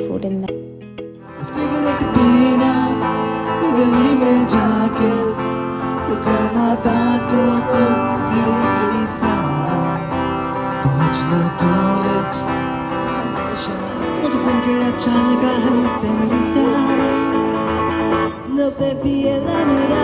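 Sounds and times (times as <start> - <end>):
strummed acoustic guitar: 0.0 - 20.0
person singing: 1.2 - 20.0.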